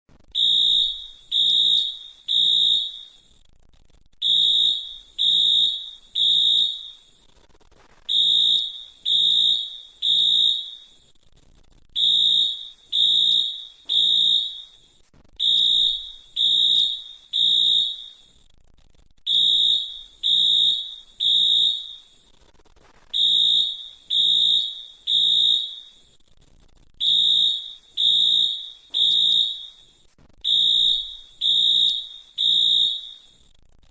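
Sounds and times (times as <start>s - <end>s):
fire alarm high-pitched beeps: 0.3s - 3.4s, 4.2s - 7.2s, 8.1s - 11.1s, 12.0s - 18.4s, 19.3s - 22.2s, 23.2s - 26.2s, 27.0s - 33.5s.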